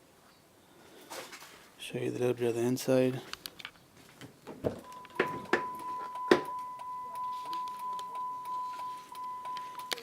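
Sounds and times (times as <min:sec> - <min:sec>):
car warning chime beep: 0:04.8 - 0:10.0
ticking clicks: 0:04.9 - 0:10.0.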